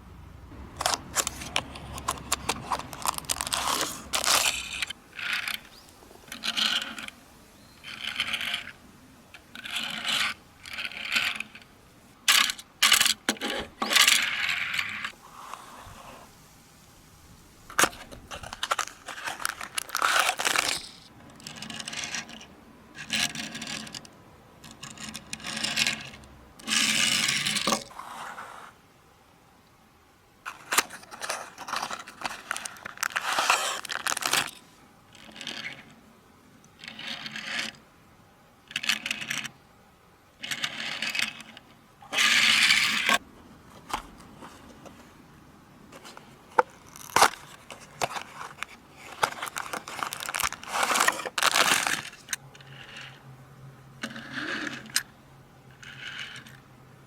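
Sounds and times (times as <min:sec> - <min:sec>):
packaging rustling and scraping: 0:00.8 - 0:07.2, 0:17.7 - 0:21.1, 0:30.5 - 0:35.8, 0:42.1 - 0:45.2, 0:45.9 - 0:53.2.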